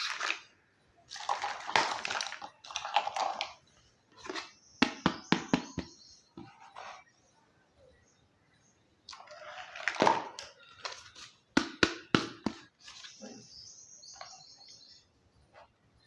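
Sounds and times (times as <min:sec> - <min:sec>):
plastic toy rustling: 0:01.1 - 0:04.6.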